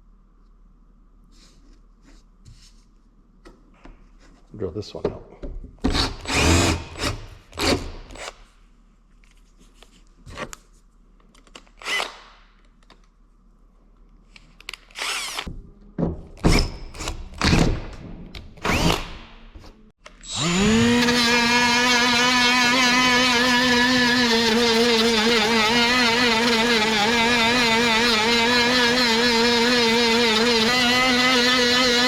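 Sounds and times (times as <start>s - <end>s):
electric drill drilling: 5.9s - 8.4s, 14.9s - 15.5s, 18.6s - 19.1s, 20.2s - 32.0s
motor whining: 20.2s - 32.0s.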